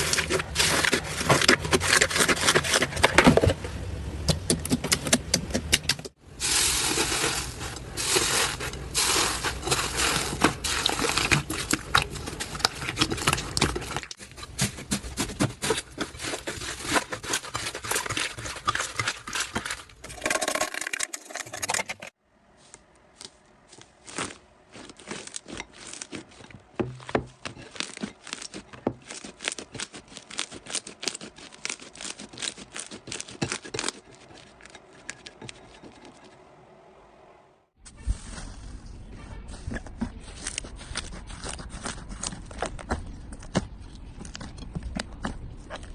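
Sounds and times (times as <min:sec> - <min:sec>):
slime crackling and popping: 0:24.0 - 0:34.6.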